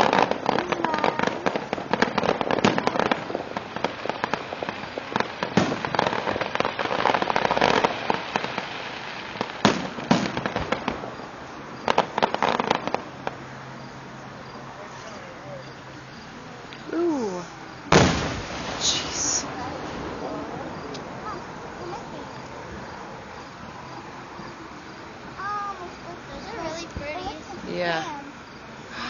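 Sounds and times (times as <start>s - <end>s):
sharp firework bangs: 0.0s - 13.4s, 17.8s - 23.5s
fireworks crackling and popping: 0.0s - 29.0s
low fireworks rumble: 0.0s - 29.0s.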